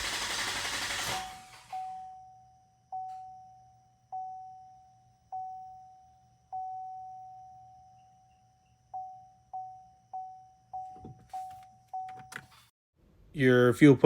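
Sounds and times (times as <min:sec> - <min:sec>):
vehicle warning chime: 0:01.7 - 0:12.4.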